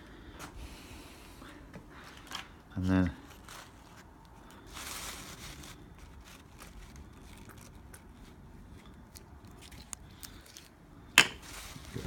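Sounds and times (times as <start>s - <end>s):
soft rustle: 2.0s - 10.8s, 11.4s - 12.0s.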